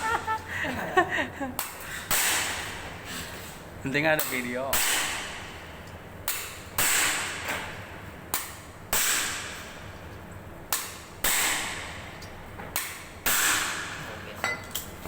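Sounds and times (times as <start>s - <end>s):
hammer striking metal: 4.2s - 5.4s.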